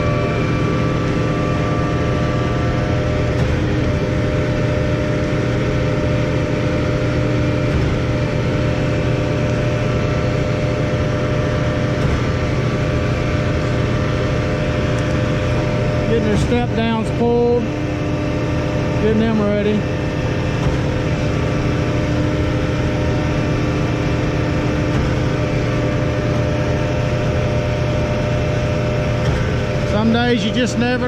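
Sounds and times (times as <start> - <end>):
heavy engine droning: 0.0 - 31.0.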